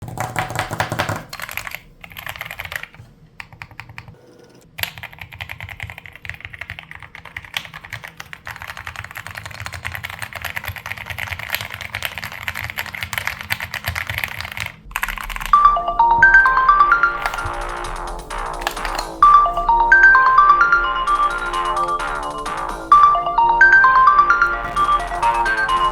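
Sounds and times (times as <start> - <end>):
ringtone melody: 15.3 - 25.9
mechanical keys clacking: 17.2 - 25.9.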